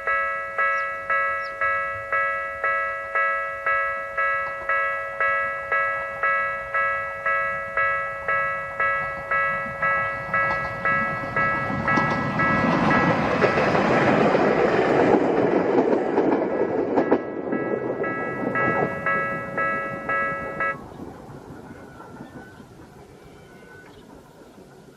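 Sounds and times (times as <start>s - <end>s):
electric train rumble: 0.0s - 24.9s
level-crossing warning bell: 0.0s - 24.9s
wheel clacks over rail joints: 8.3s - 20.8s.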